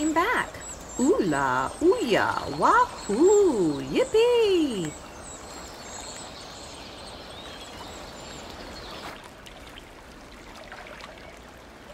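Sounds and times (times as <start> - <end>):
faint bird chirps: 0.0 - 9.2
flowing stream: 0.0 - 11.9.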